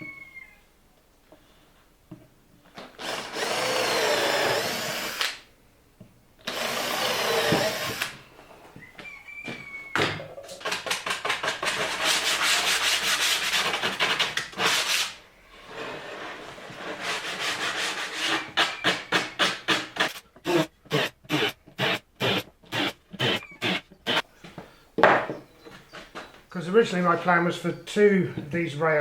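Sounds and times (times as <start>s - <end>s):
wood being sanded by hand: 11.0s - 24.2s.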